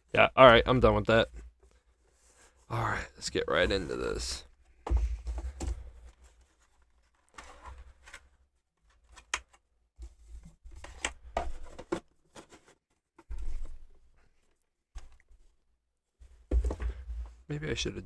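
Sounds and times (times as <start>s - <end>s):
cardboard box packaging rustling: 10.8s - 12.8s.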